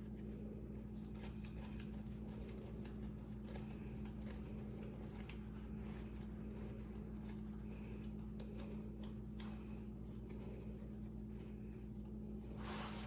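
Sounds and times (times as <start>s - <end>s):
low electrical hum: 0.0s - 13.0s
light wiping strokes: 9.6s - 13.0s.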